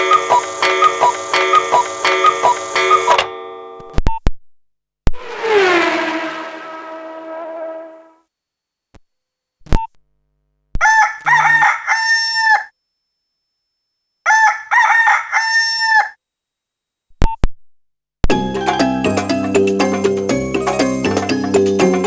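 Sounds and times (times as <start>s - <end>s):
rooster crow ringtone: 10.8s - 12.7s, 14.2s - 16.2s.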